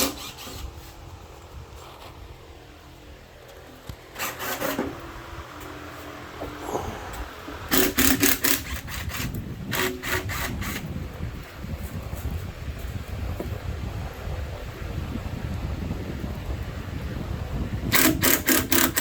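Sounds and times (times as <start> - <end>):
grinder rasping: 4.2 - 4.8.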